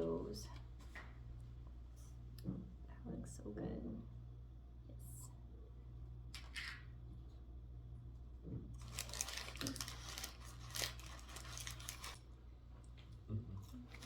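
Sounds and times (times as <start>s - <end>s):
food packaging crinkling: 8.8s - 12.2s.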